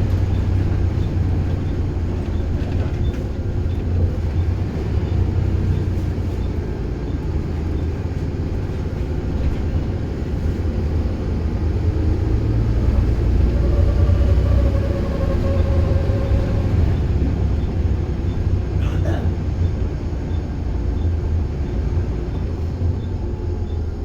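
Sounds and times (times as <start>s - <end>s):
bus engine drone: 0.0s - 24.0s
steady whine: 12.3s - 17.8s.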